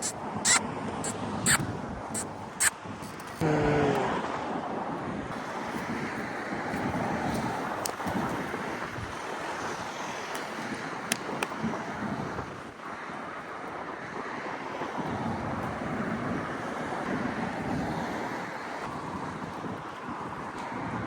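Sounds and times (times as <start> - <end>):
wind buffeting microphone: 0.0 - 21.0
waves washing onto beach: 5.3 - 21.0.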